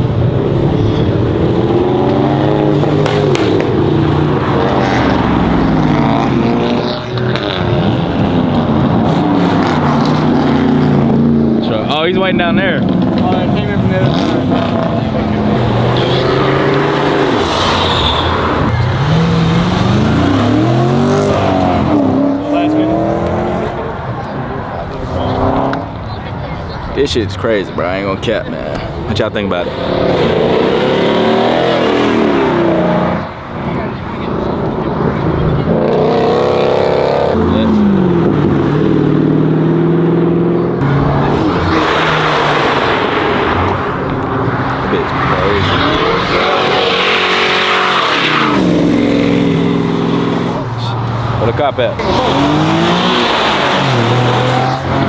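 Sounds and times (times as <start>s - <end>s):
car engines revving: 0.0s - 55.0s.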